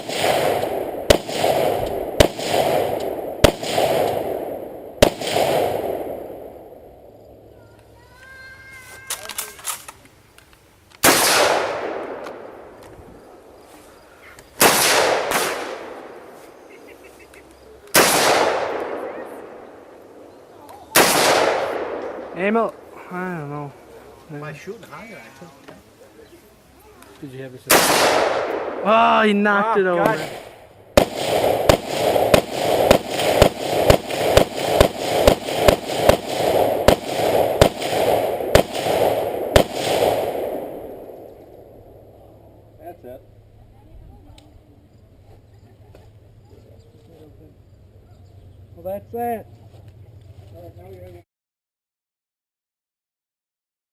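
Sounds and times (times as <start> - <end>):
rifle shots with echo: 0.0 - 7.0, 11.0 - 13.5, 14.6 - 16.4, 17.9 - 20.3, 20.9 - 22.8, 27.7 - 42.4.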